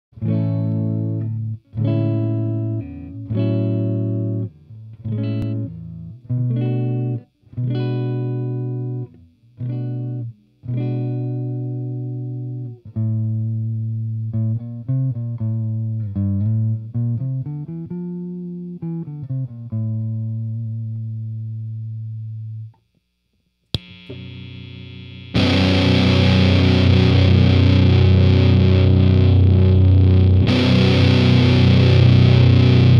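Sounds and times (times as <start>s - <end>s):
click: 23.6s - 24.4s
distorted electric guitar: 23.7s - 32.9s.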